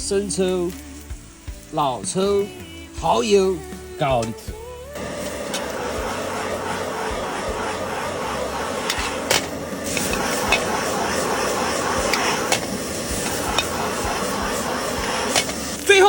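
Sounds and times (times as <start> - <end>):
frying hiss: 0.0 - 16.0.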